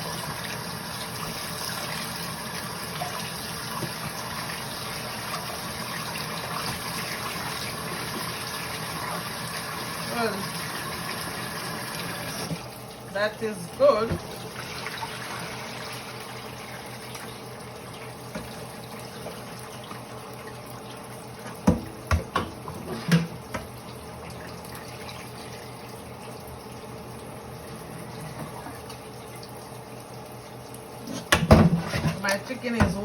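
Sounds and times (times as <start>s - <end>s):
tap water running into sink: 0.0s - 33.0s.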